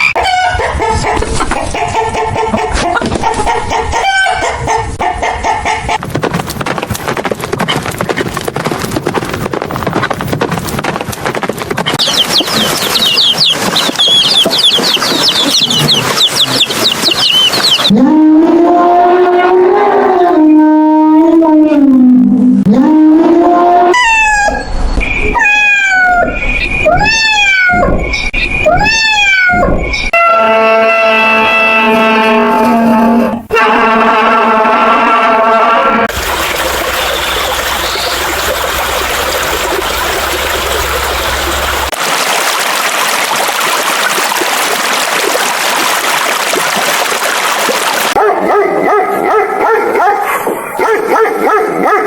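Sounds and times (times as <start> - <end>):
quick high chirps: 12.0 - 17.9
cat meowing: 25.4 - 27.9, 28.7 - 29.7.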